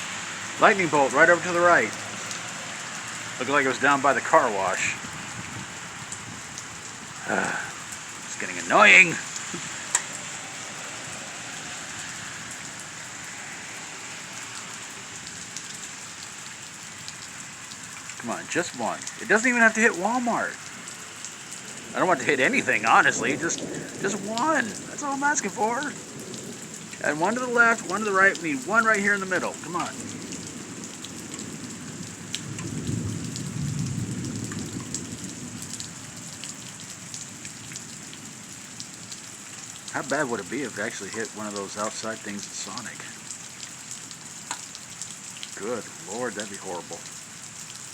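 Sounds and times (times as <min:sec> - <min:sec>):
raindrops ticking close by: 0:00.0 - 0:47.9
steady rain falling: 0:00.0 - 0:47.9
low thunder rumble: 0:21.6 - 0:28.2, 0:29.5 - 0:36.0.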